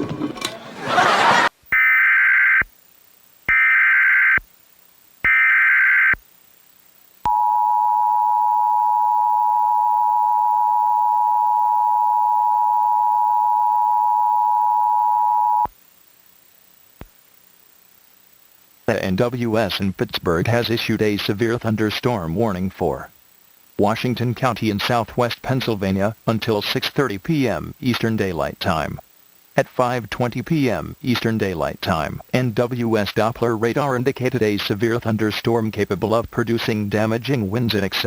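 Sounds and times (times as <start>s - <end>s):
two-tone attention signal: 7.3s - 15.7s
tv programme audio: 18.8s - 23.2s, 23.8s - 38.0s.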